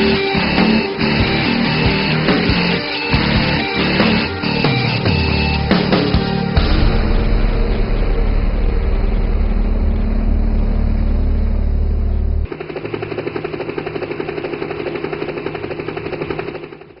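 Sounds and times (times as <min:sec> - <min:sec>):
motor whine: 0:00.0 - 0:17.0
toy helicopter rotor chopping: 0:12.5 - 0:17.0.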